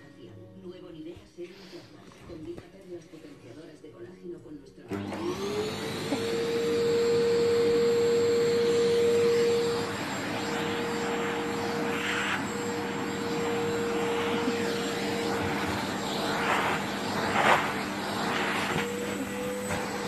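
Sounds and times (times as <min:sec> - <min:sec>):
vacuum cleaner whining: 0:04.9 - 0:20.0.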